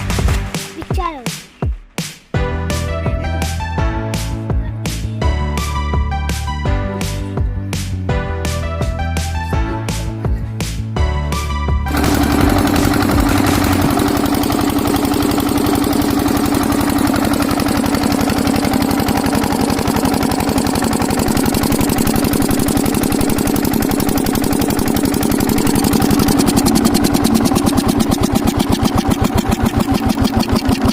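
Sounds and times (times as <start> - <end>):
diesel engine knocking: 11.8 - 30.9.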